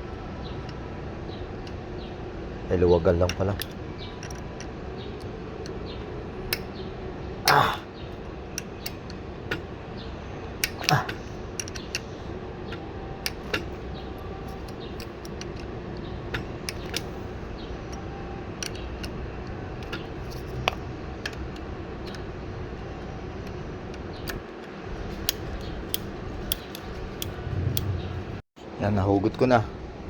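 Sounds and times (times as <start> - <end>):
steady background hum: 0.0 - 30.0
metallic clicks of bicycle parts: 3.3 - 5.8, 6.5 - 6.7, 10.6 - 12.1, 12.7 - 13.8, 16.3 - 17.2, 23.4 - 27.9.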